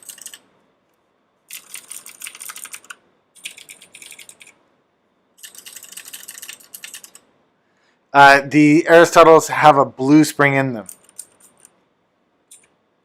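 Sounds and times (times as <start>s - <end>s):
mechanical keyboard clicks: 0.0s - 0.4s, 1.5s - 4.6s, 5.4s - 7.2s.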